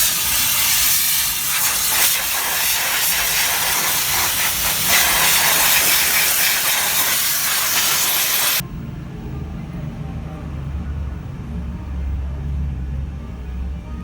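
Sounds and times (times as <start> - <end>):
hissing spray of cleaning jet: 0.0 - 8.6.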